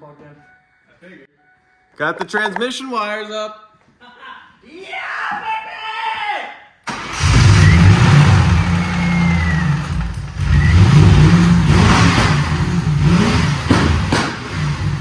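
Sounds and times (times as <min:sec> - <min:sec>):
car engine revving: 0:06.9 - 0:15.0.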